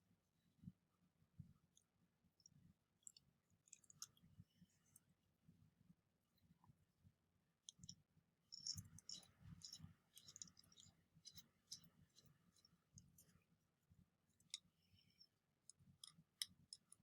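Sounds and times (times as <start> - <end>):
metal parts clicking and scraping: 8.5 - 12.3.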